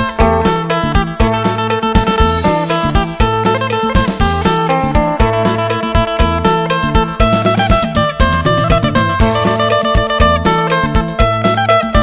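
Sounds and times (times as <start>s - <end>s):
plucked lute melody: 0.0s - 12.0s
steady drum beat: 0.0s - 12.0s.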